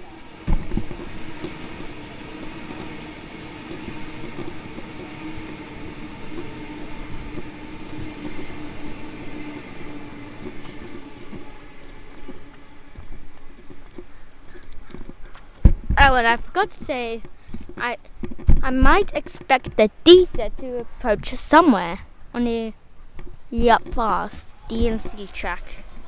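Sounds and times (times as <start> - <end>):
wheel knocks on rails: 0.0 - 14.1
electric train humming: 0.0 - 26.0.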